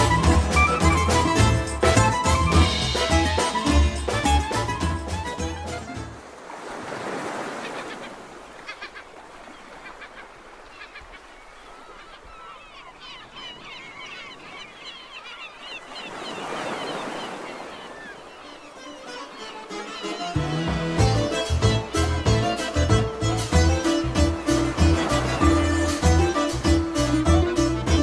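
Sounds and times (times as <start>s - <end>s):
birds honking and calling: 7.4s - 28.0s.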